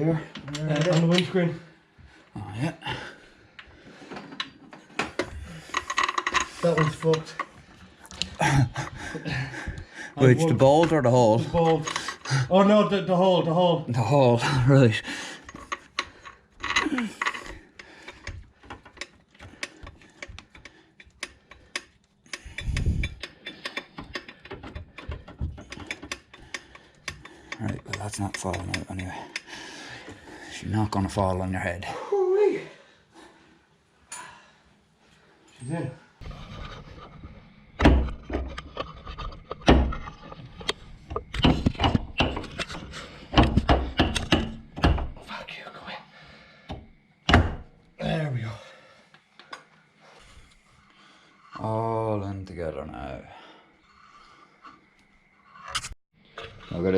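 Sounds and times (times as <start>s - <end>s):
knocks of tools and metal parts: 0.2s - 1.4s, 3.6s - 7.7s, 15.4s - 30.3s, 36.6s - 45.2s, 46.6s - 47.8s.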